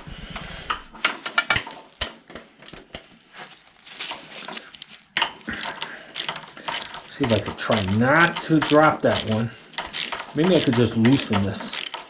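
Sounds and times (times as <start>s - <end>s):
hand tools and metal parts clinking: 4.4s - 12.0s.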